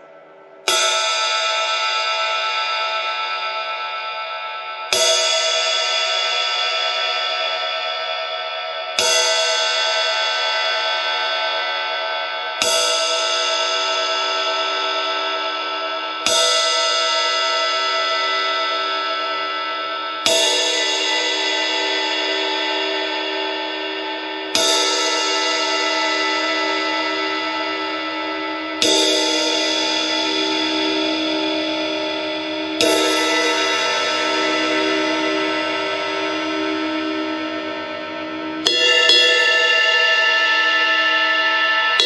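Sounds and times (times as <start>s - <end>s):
ride cymbal struck and ringing: 14.5s - 42.0s.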